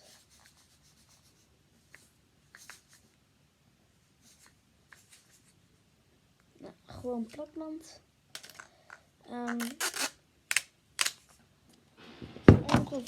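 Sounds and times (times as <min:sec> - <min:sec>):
hands handling sticky tape: 0:08.3 - 0:08.7, 0:09.4 - 0:11.4.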